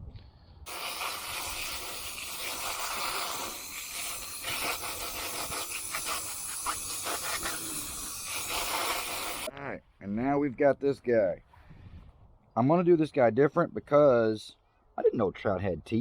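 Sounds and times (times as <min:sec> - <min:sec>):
garden hose spraying water: 0:00.7 - 0:09.5.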